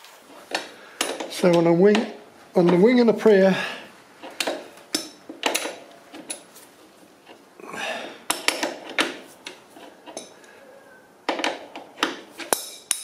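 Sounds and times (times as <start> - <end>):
spanner clinking on metal nut: 4.2 - 6.5, 8.3 - 10.4, 11.3 - 13.0.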